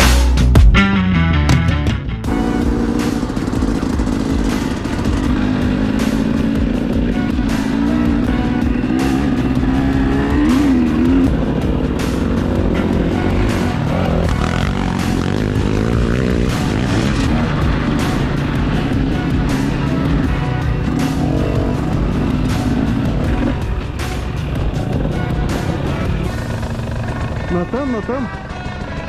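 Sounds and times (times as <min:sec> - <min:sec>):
music playing: 0:00.0 - 0:29.0
off-road vehicle engine running: 0:01.5 - 0:29.0.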